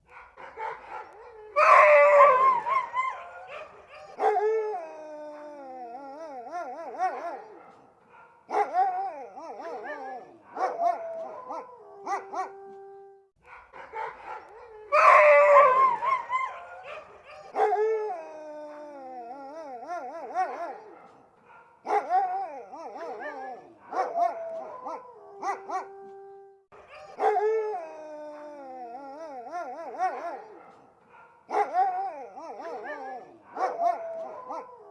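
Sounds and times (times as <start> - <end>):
dogs barking: 0.0 - 4.4, 6.8 - 12.6, 13.4 - 17.8, 20.2 - 25.9, 29.8 - 34.9
dogs howling: 0.1 - 34.9.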